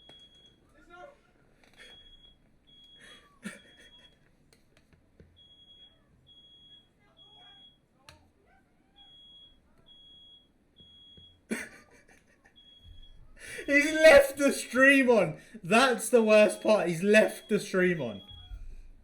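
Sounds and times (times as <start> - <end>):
smoke alarm beeping: 0.0 - 0.6, 1.8 - 4.2, 5.3 - 7.9, 9.0 - 19.0
faint voices: 13.4 - 18.2.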